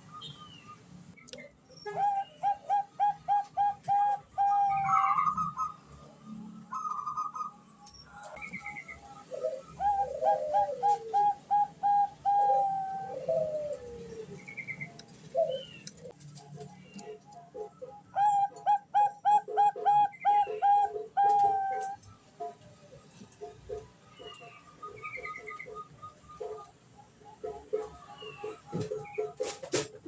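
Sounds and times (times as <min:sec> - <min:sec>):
dove cooing: 0:01.8 - 0:05.8, 0:08.3 - 0:26.7.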